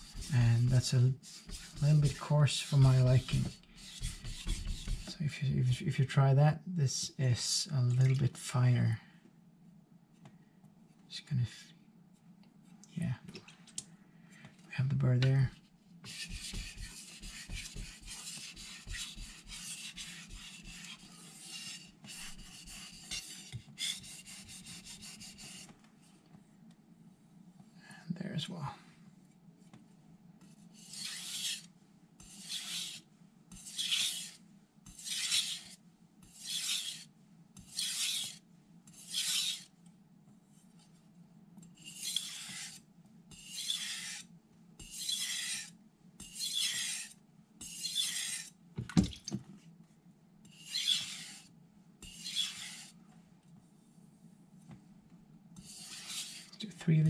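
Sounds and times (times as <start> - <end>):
knife scraping on whetstone: 16.1 - 25.6, 30.8 - 39.7, 41.8 - 48.6, 50.5 - 53.0, 55.6 - 56.6.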